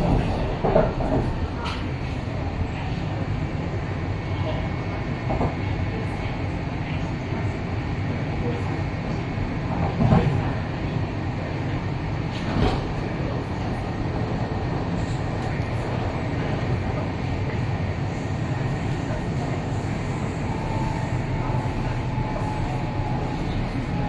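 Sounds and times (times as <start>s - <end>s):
train rumbling: 0.0s - 24.0s.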